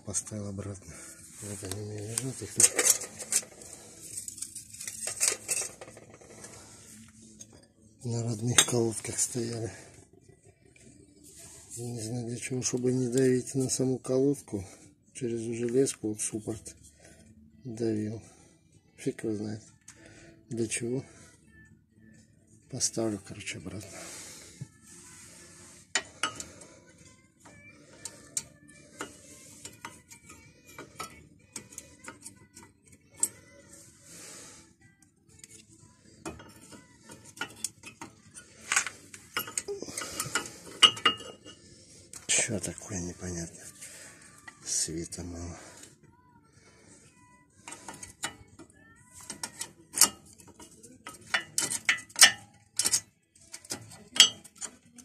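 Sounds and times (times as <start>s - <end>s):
metallic clicks and scrapes: 1.2s - 9.6s, 25.0s - 26.7s, 27.5s - 33.4s, 35.3s - 42.9s, 47.1s - 55.0s.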